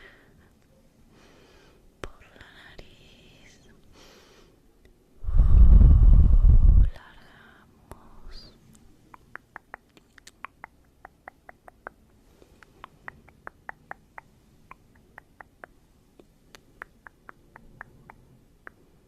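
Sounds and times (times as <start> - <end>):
wet tongue and lip clicks: 8.7 - 18.9.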